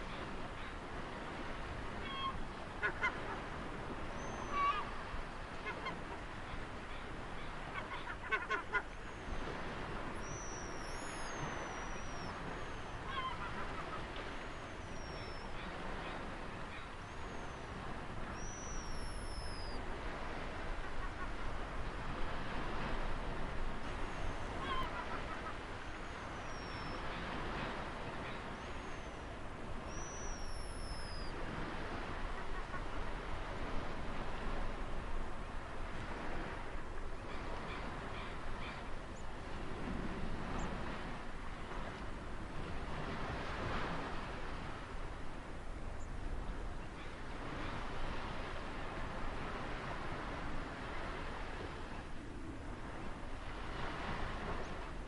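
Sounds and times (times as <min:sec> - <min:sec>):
ocean surf washing: 0:00.0 - 0:55.0
bird whistling: 0:10.2 - 0:12.4, 0:18.4 - 0:19.8, 0:29.9 - 0:31.3.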